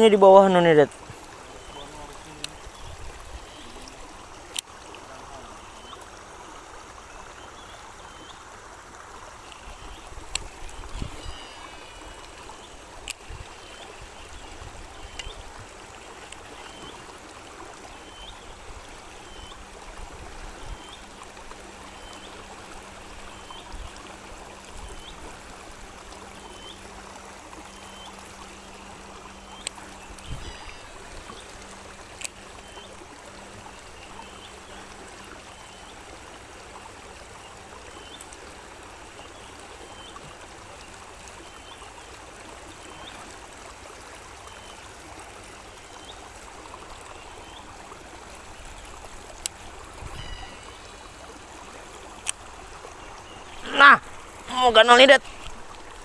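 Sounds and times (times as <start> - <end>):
river water rushing: 0.0 - 56.0
short high call: 50.1 - 50.9.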